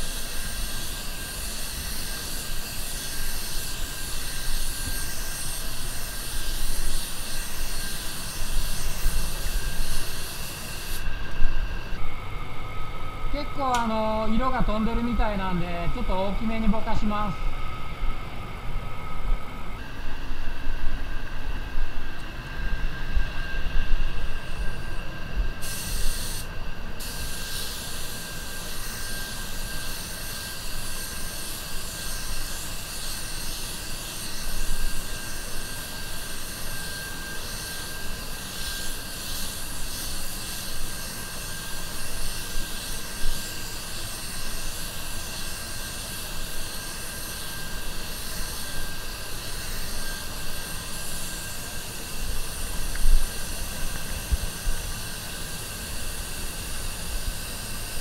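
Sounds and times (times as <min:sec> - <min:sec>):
thin steady tone: 0:00.0 - 0:58.0
spray gun hissing: 0:25.6 - 0:28.2.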